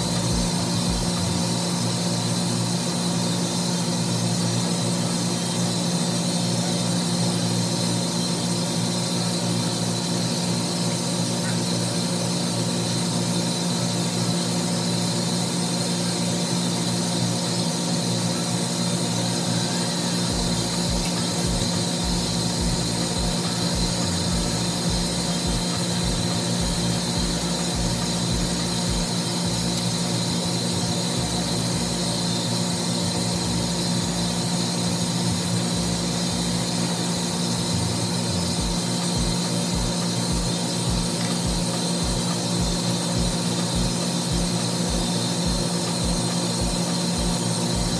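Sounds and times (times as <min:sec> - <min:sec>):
steam machinery humming: 0:00.0 - 0:47.9
low thumps: 0:20.3 - 0:29.7.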